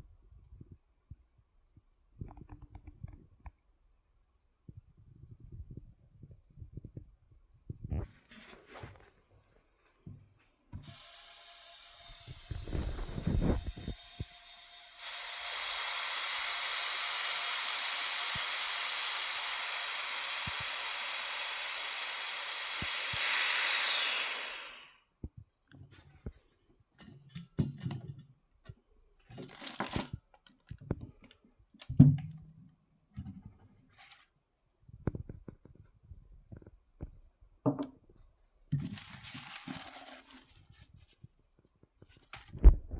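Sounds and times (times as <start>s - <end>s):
air hissing through valve: 10.8s - 24.9s.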